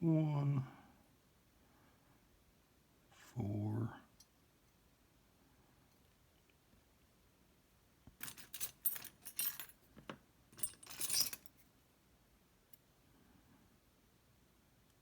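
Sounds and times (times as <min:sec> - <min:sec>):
small metal parts clinking: 0:08.2 - 0:09.8, 0:10.5 - 0:11.6.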